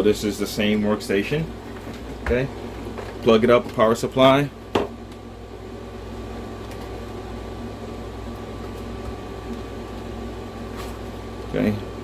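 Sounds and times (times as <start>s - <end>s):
electrical hum and hiss: 0.0s - 12.0s.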